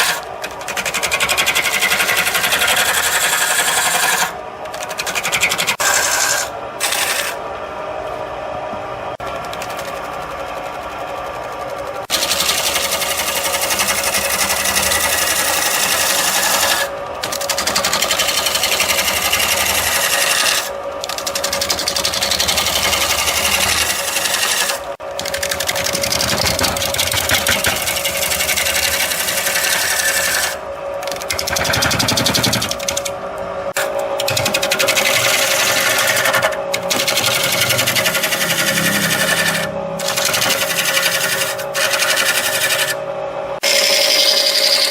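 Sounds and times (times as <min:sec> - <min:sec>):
turning tool cutting wood: 0:00.0 - 0:07.5, 0:09.2 - 0:44.9
wood lathe spinning: 0:00.0 - 0:07.6, 0:09.1 - 0:44.9.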